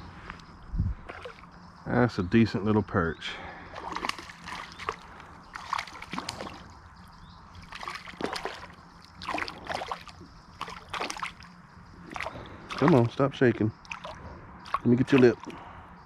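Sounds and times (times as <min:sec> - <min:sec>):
fish splashing water: 0:01.1 - 0:01.5, 0:03.7 - 0:06.8, 0:07.5 - 0:13.1, 0:13.8 - 0:15.7.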